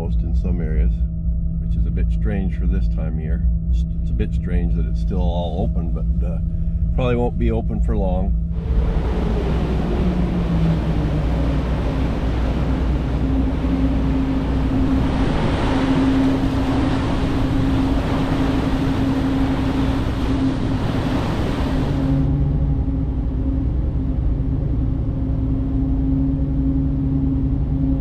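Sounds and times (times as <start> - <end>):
ferry engine drone: 0.0 - 28.0
wind: 0.0 - 28.0
rushing water: 8.6 - 22.3.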